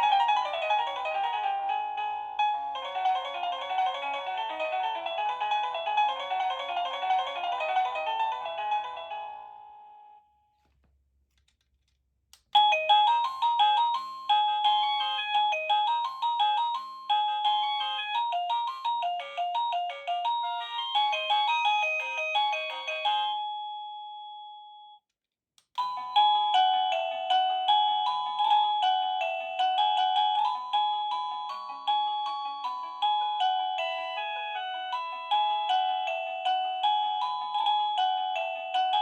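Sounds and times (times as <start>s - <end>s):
doorbell chime melody: 12.6s - 25.0s, 25.8s - 39.0s.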